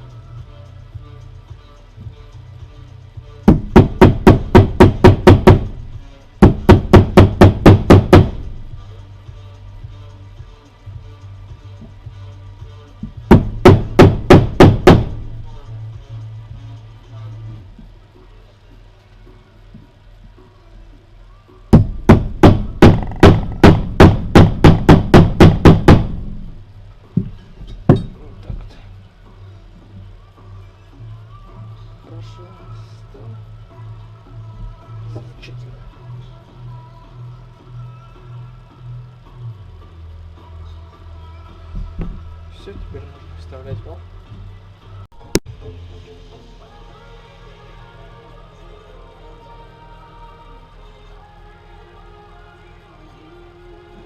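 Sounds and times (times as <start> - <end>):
hammer strikes on metal: 3.5 - 5.8, 6.4 - 8.6, 13.0 - 15.3, 21.7 - 26.5, 27.2 - 28.2.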